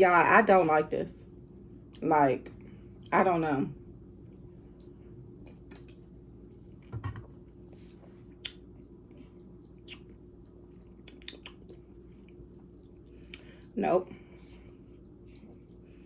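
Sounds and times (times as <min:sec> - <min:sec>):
low room hum: 0:00.0 - 0:16.0
wet mouth clicks and smacks: 0:08.3 - 0:10.2, 0:10.8 - 0:11.9.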